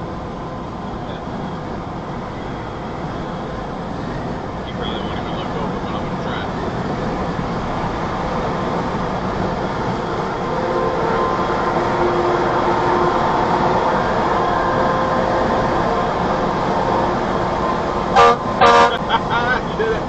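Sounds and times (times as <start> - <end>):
road and engine noise inside truck: 0.0 - 20.0
multi-tone air horn: 18.2 - 19.0.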